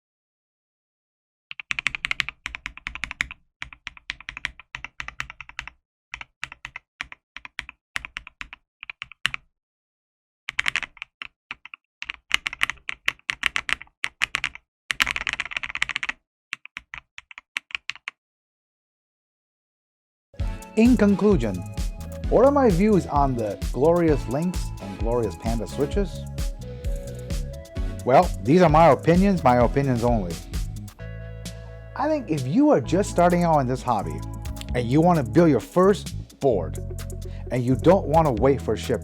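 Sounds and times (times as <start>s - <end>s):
mechanical keyboard typing: 1.5s - 9.4s, 10.5s - 18.2s.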